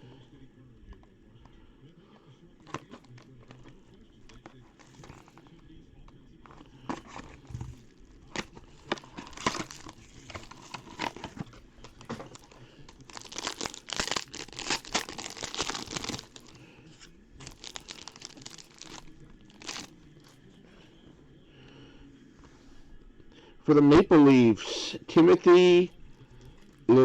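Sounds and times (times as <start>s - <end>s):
wrapper tearing and crinkling: 7.0s - 16.6s, 17.4s - 19.9s.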